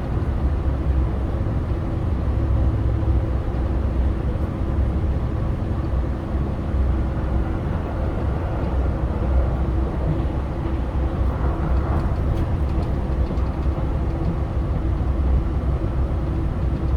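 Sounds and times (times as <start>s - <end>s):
diesel railcar rumbling on rails: 0.0s - 16.9s.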